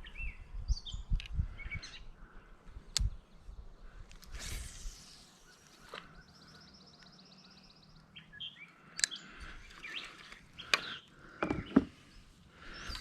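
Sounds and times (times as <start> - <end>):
birds chirping: 0.0 - 4.1, 5.0 - 13.0
sharp clicks: 2.9 - 3.2, 8.6 - 9.2.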